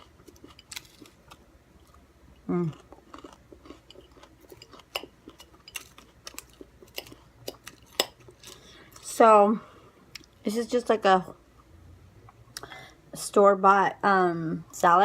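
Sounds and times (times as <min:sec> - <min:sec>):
person chewing: 0:00.0 - 0:09.1.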